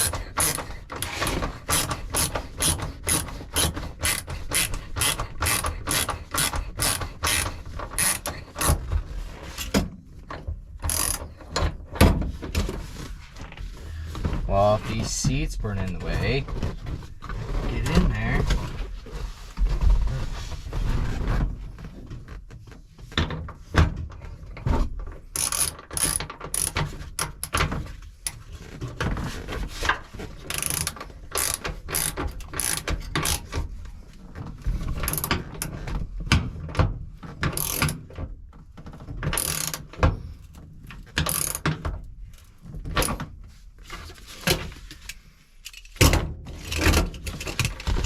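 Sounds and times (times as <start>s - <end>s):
ratchet wrench clicking: 0.0s - 8.8s, 10.8s - 11.2s, 25.4s - 26.8s, 30.5s - 33.4s, 37.6s - 38.0s, 39.4s - 39.8s, 41.3s - 41.6s.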